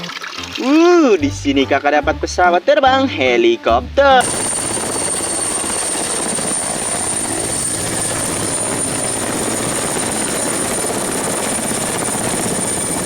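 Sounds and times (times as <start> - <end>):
helicopter engine whine: 4.2 - 13.0
helicopter rotor chop: 4.2 - 13.0.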